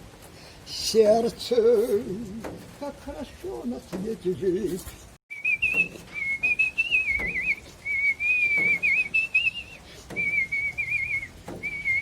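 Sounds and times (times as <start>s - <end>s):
man whistling a melody: 5.3s - 12.0s.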